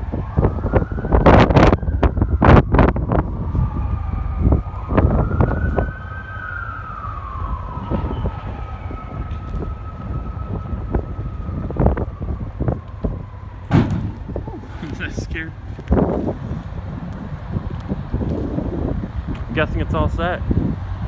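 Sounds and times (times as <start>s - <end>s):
fire engine siren winding down: 0.0s - 13.8s
wind rumble on microphone: 0.0s - 21.0s
knocks on microphone: 13.7s - 14.6s.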